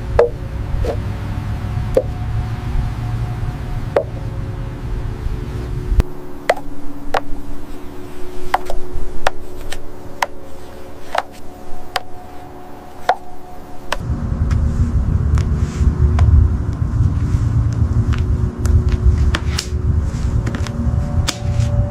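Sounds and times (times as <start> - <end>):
low rumble: 0.0 - 21.9
steady hum: 0.0 - 21.9.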